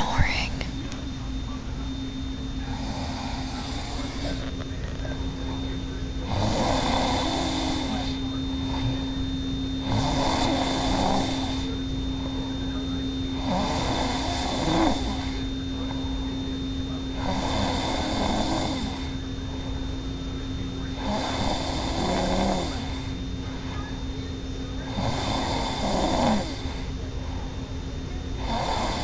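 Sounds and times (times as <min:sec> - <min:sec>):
woman snoring: 0:00.0 - 0:00.7, 0:02.7 - 0:04.5, 0:06.3 - 0:08.2, 0:09.8 - 0:11.7, 0:13.4 - 0:15.4, 0:17.2 - 0:19.1, 0:21.0 - 0:23.2, 0:24.9 - 0:26.8, 0:28.4 - 0:29.0
steady hum: 0:00.0 - 0:29.0.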